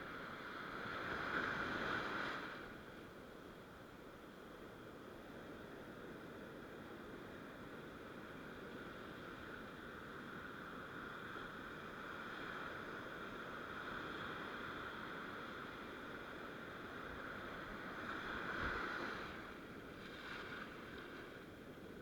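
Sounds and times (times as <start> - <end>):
sea surf washing on shore: 9.8 - 22.0.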